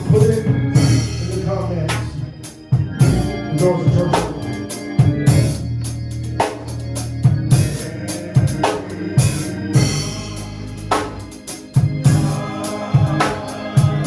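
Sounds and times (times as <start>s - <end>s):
drum kit playing: 0.0s - 14.0s
sustained low bass line: 0.0s - 14.0s.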